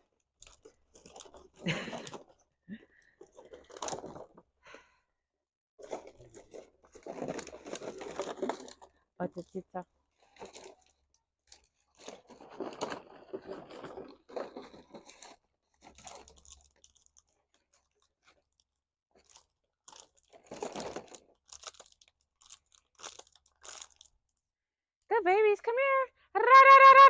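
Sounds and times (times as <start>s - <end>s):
puppies chewing and crunching: 0.4s - 2.4s, 5.8s - 9.5s, 10.3s - 24.2s.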